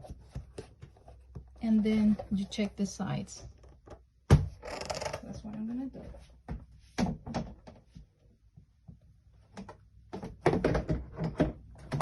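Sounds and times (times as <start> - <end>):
plastic cover clicking and knocking: 9.5 - 12.0.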